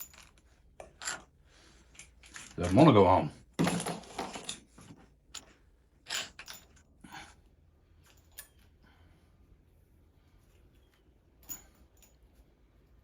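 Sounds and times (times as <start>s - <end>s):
metal parts scraping: 0.0s - 2.9s, 3.6s - 6.9s.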